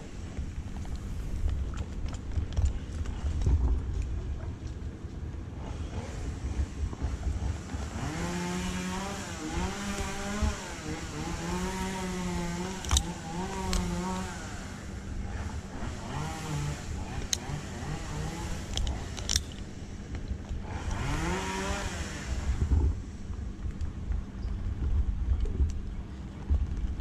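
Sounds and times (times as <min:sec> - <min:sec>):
chainsaw engine revving: 0:05.6 - 0:22.9
sharp clicks: 0:12.7 - 0:13.9, 0:18.4 - 0:21.0.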